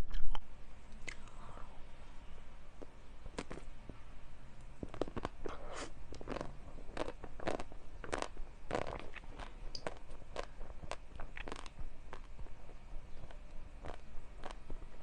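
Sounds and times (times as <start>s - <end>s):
wet mouth clicks: 0.0s - 1.4s, 4.9s - 12.4s
crunchy bites and chewing: 4.8s - 12.3s.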